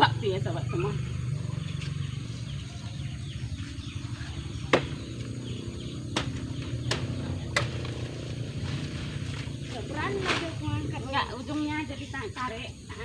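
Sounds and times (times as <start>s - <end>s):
steady low hum: 0.0s - 13.0s
sharp knocks: 4.7s - 5.0s, 6.1s - 8.0s.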